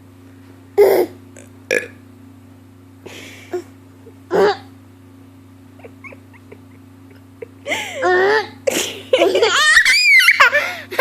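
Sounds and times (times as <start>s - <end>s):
burps: 1.4s - 2.0s, 4.3s - 4.7s.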